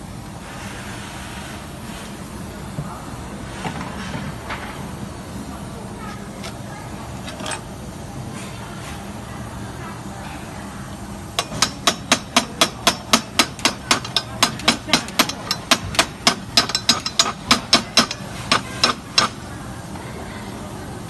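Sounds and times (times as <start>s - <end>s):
hammer striking metal: 11.4s - 19.4s.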